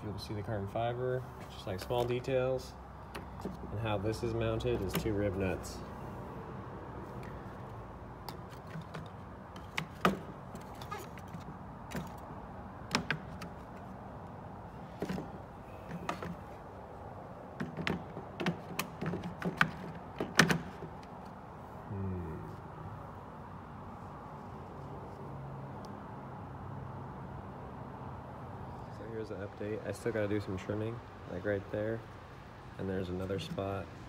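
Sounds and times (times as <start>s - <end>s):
plastic parts clicking and knocking: 8.2s - 12.2s, 12.8s - 13.9s, 17.6s - 21.4s.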